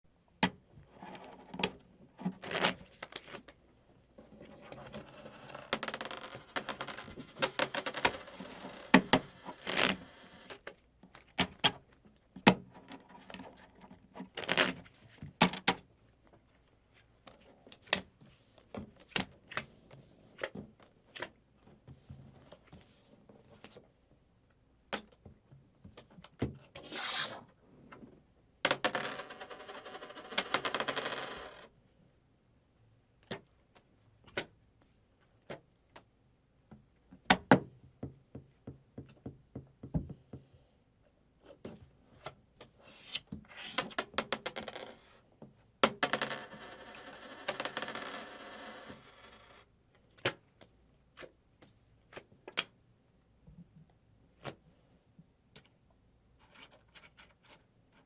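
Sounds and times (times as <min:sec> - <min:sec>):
coins clinking: 0:05.5 - 0:09.0, 0:28.7 - 0:31.6.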